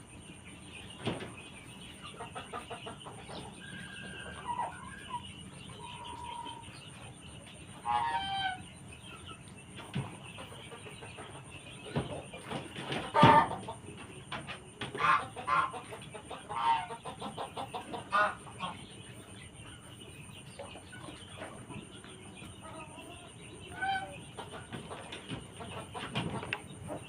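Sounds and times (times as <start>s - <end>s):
chicken squawking and clucking: 2.1s - 6.8s, 7.8s - 8.7s, 12.4s - 14.0s, 14.8s - 18.9s, 22.5s - 27.0s.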